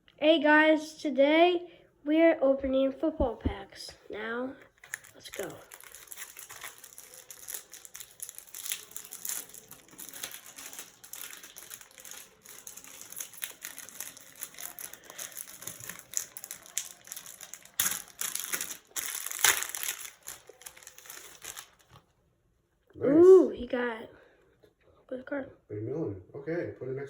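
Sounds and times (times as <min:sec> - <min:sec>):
plastic wrapper crinkling: 0:04.8 - 0:22.1.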